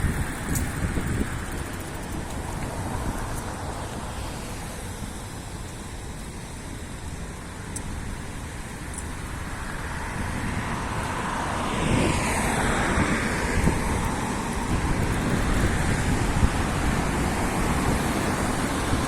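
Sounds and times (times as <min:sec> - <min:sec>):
road traffic: 0:00.0 - 0:19.0
wind buffeting microphone: 0:00.0 - 0:19.0
vehicle passing close by: 0:09.4 - 0:19.0.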